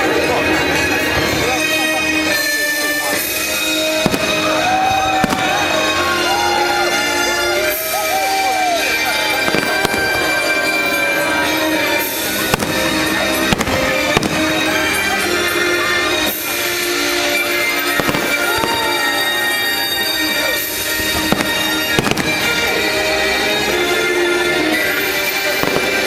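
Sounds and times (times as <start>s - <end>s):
music from loudspeakers: 0.0s - 26.0s
fireworks bursting: 0.2s - 26.0s
sharp firework bangs: 3.4s - 6.6s, 12.0s - 15.1s, 17.9s - 19.9s, 20.6s - 22.9s.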